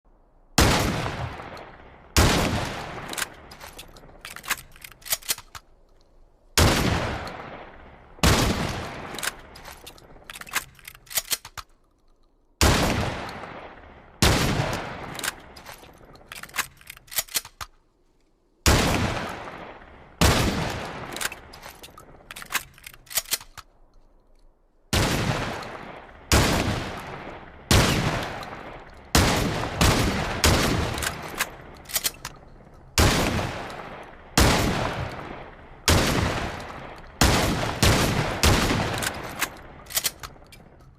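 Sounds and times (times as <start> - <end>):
shotgun blasts: 0.6 - 3.6, 6.6 - 10.8, 12.6 - 15.6, 18.6 - 21.6, 24.9 - 32.2, 33.0 - 40.4
sharp clicks: 3.0 - 6.1, 9.0 - 12.4, 15.1 - 18.3, 21.1 - 24.5, 30.9 - 32.9, 38.9 - 40.9.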